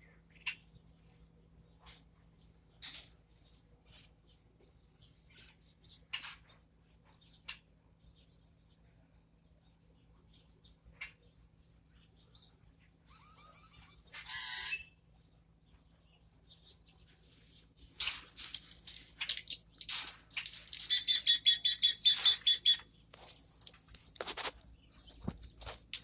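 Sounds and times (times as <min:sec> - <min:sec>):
parrot chirping and squawking: 0:13.0 - 0:15.0, 0:20.4 - 0:22.9.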